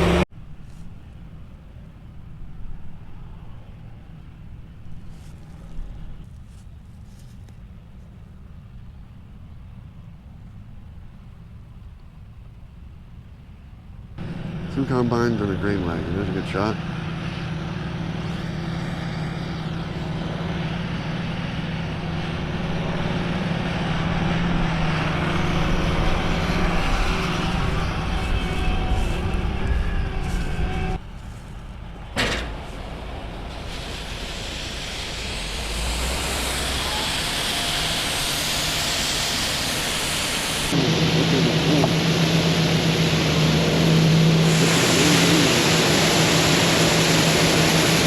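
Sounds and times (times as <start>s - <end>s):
airy machine noise: 0.0s - 0.3s, 14.2s - 48.0s
farm machinery engine drone: 0.0s - 10.3s, 14.0s - 48.0s.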